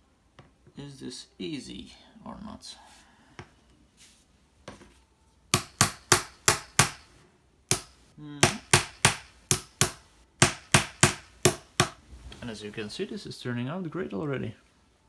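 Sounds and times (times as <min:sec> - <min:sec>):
hammer tapping metal pins: 0:05.5 - 0:12.0.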